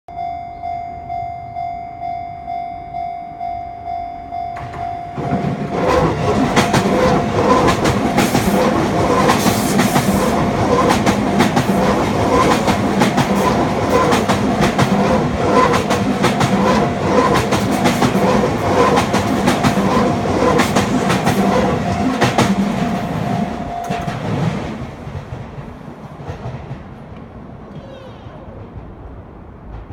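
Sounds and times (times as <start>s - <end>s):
level crossing alarm bell ringing: 0.1s - 5.7s, 21.7s - 24.6s
train wheels clattering over rail joints: 4.6s - 27.3s
train rumble: 4.6s - 29.9s.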